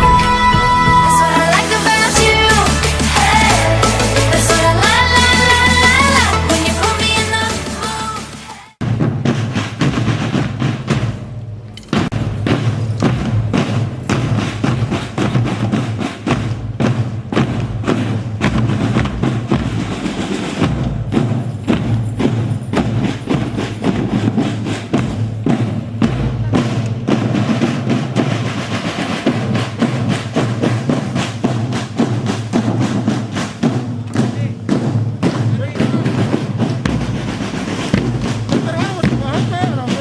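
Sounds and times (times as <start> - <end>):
sharp drum strikes: 8.8 - 40.0.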